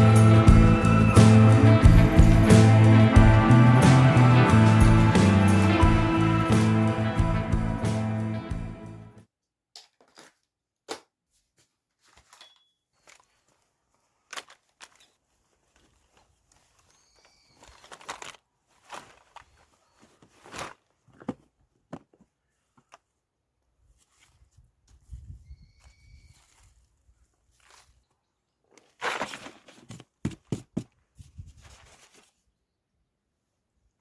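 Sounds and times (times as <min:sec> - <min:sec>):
background music: 0:00.0 - 0:09.2.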